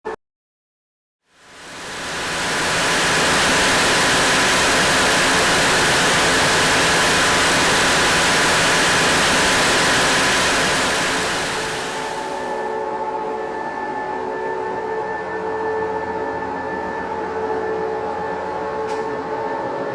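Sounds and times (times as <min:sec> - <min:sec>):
faint steady whines: 0:01.4 - 0:19.6
diesel engines and blowers roaring: 0:01.6 - 0:12.7.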